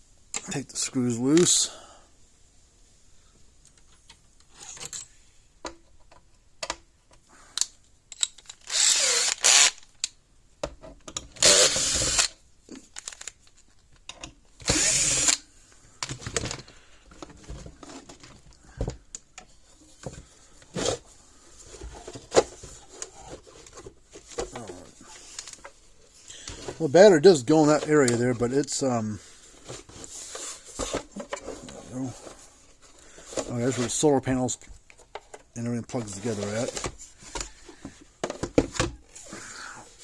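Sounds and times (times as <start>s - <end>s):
power driver whirring: 8.7s - 9.8s, 11.4s - 12.3s, 14.6s - 15.4s.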